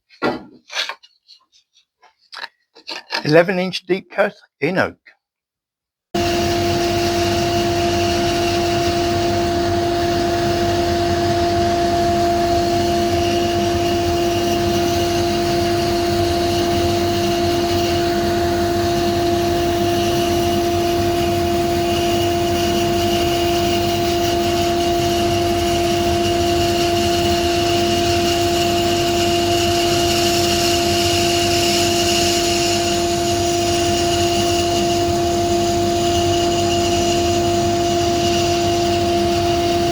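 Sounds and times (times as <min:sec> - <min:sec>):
bandsaw cutting wood: 0:06.2 - 0:39.9.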